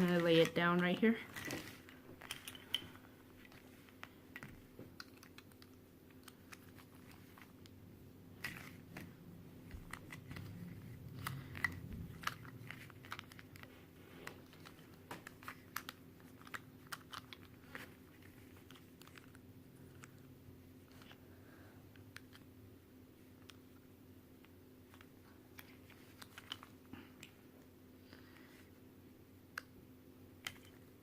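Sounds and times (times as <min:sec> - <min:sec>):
plastic puzzle pieces clicking: 0:03.5 - 0:07.7, 0:08.4 - 0:20.2.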